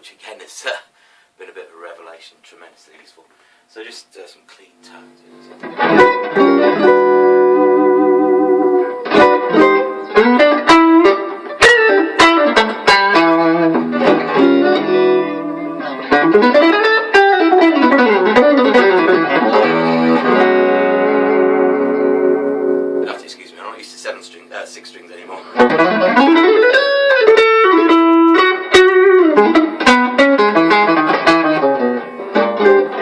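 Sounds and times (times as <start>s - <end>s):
clean electric guitar playing: 5.2s - 33.0s.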